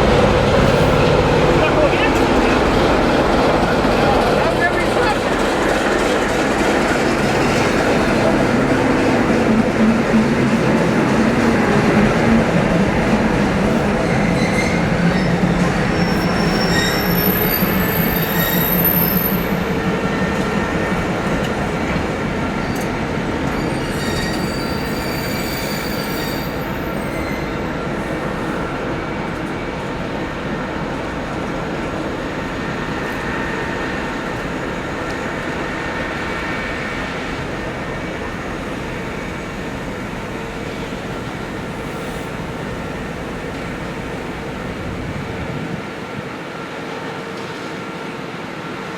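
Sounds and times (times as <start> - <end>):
diesel locomotive engine rumbling: 0.0 - 48.9
train wheels squealing: 13.8 - 19.6, 22.6 - 28.3.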